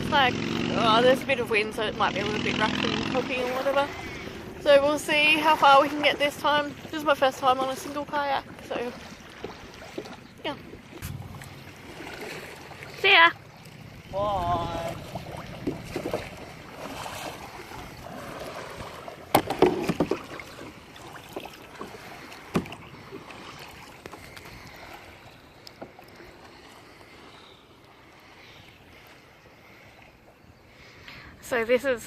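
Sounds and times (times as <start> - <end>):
paddle splashing in water: 2.1 - 31.1.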